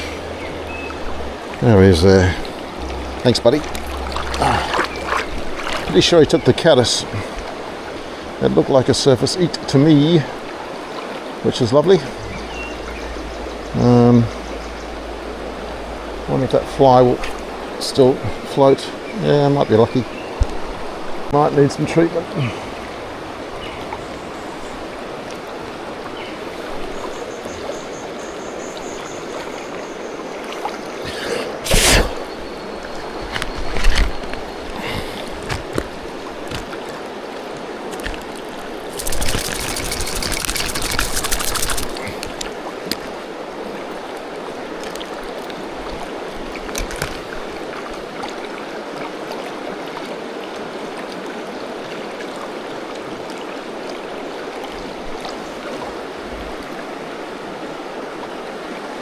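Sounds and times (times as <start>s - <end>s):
river flowing: 0.0s - 59.0s.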